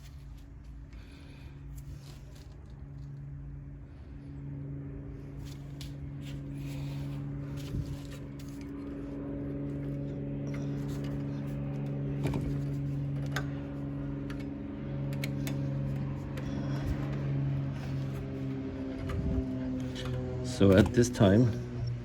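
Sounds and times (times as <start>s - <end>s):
low mechanical hum: 0.0s - 22.0s
light clicks and taps of tools: 14.2s - 17.2s.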